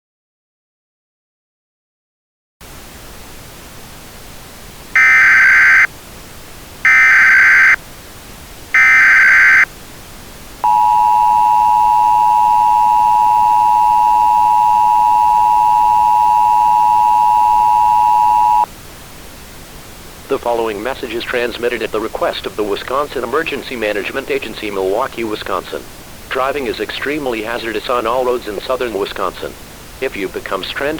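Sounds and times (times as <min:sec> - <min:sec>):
faint hiss: 0:02.6 - 0:30.9
digital header bursts: 0:05.0 - 0:05.9, 0:06.9 - 0:07.8, 0:08.8 - 0:09.6
two-tone attention signal: 0:05.0 - 0:05.9, 0:06.9 - 0:07.8, 0:08.8 - 0:09.7, 0:10.6 - 0:18.7.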